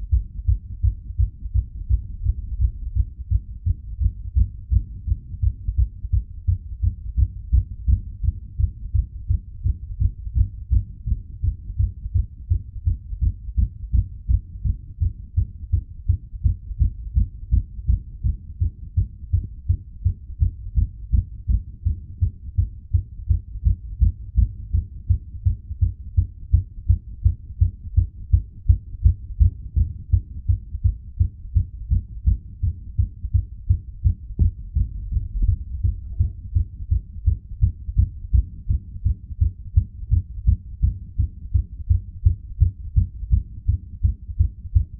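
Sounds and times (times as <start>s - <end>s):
fast heartbeat thuds: 0.0s - 44.9s.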